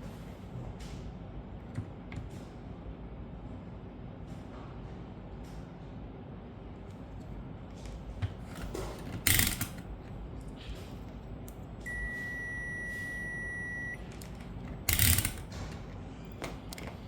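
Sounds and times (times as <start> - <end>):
high electronic beep: 11.9 - 14.0.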